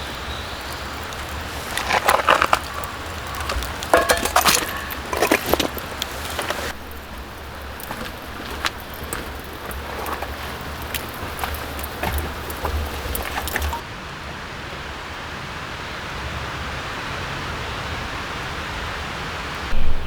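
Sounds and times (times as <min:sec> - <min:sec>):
camp gear clattering and clicking: 0:00.9 - 0:13.8.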